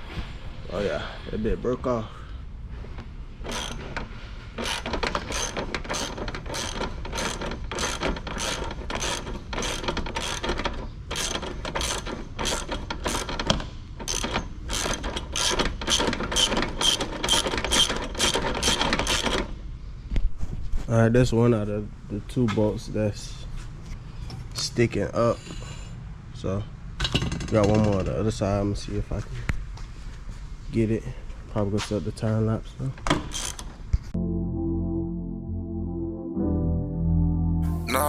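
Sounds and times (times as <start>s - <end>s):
ratchet wrench clicking: 3.4s - 4.0s, 4.6s - 19.4s.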